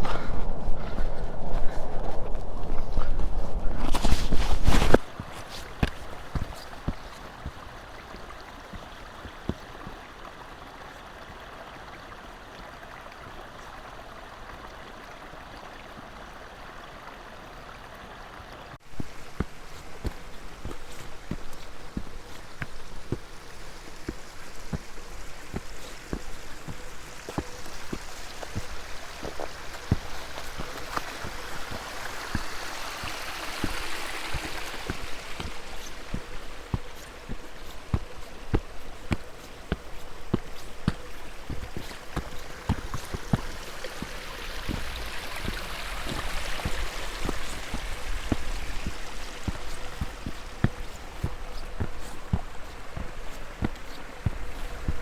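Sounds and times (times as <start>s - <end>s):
wind noise: 0.0s - 7.6s
footsteps crunching on path: 0.0s - 10.1s, 18.8s - 55.0s.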